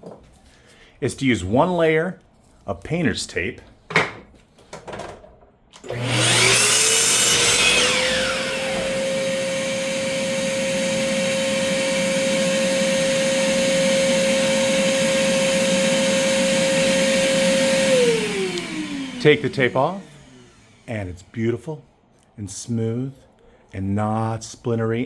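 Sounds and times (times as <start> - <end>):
power tool cutting wood: 5.8 - 21.4.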